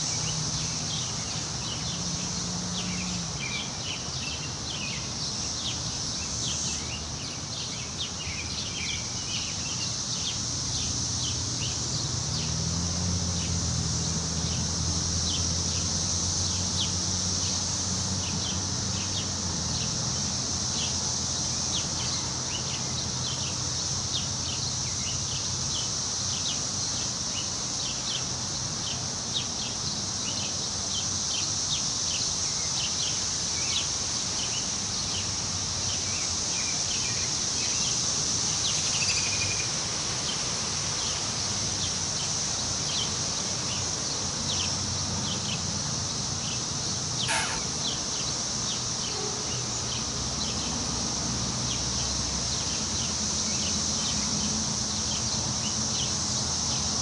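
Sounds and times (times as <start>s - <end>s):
high insect buzz: 0.0s - 28.2s, 46.3s - 54.2s
short bird chirps: 47.2s - 48.3s.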